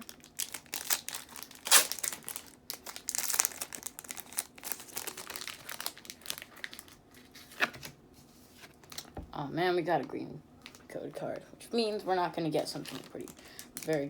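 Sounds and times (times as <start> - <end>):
foil wrapper crinkling and tearing: 0.0 - 7.8, 12.7 - 14.0.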